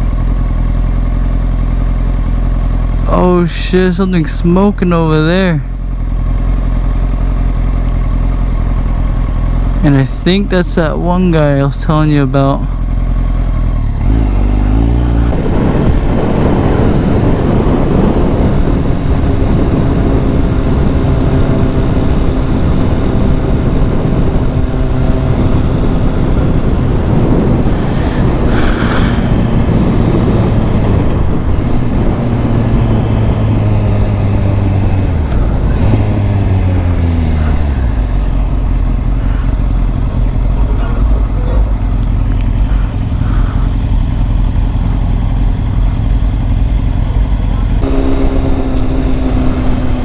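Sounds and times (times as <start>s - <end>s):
motorcycle engine running: 0.0s - 50.0s
wind rush on microphone: 13.5s - 50.0s.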